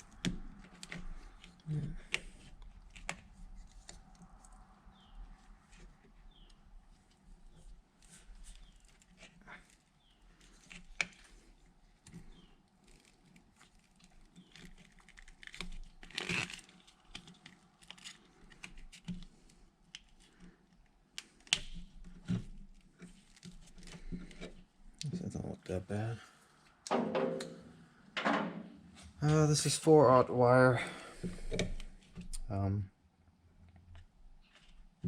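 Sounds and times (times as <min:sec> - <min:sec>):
handling clicks taps and crinkling: 0:33.6 - 0:35.0.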